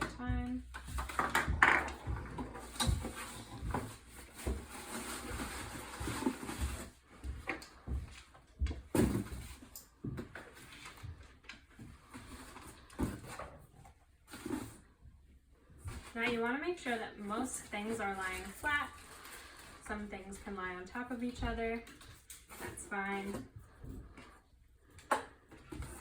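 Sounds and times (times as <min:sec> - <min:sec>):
paper and packaging rustling: 0:02.6 - 0:07.4, 0:15.8 - 0:20.6.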